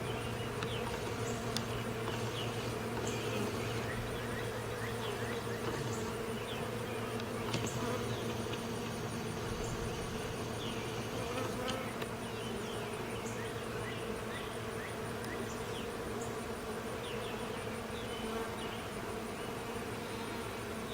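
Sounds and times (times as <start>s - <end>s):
birds chirping: 0.0s - 14.1s
bees buzzing: 0.0s - 20.9s.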